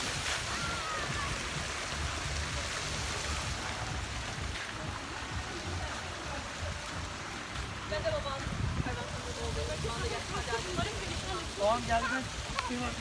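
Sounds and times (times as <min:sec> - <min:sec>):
wind on microphone: 0:00.0 - 0:13.0.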